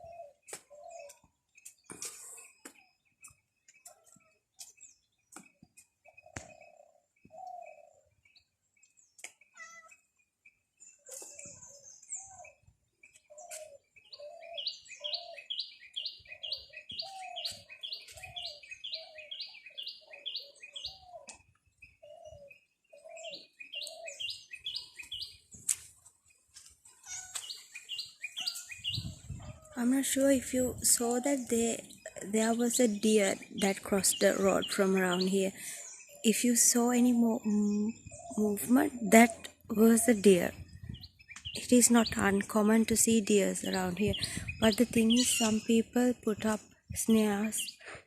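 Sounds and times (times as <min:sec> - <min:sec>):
lower bird calls: 0:00.0 - 0:05.0, 0:10.8 - 0:25.6, 0:26.9 - 0:42.6.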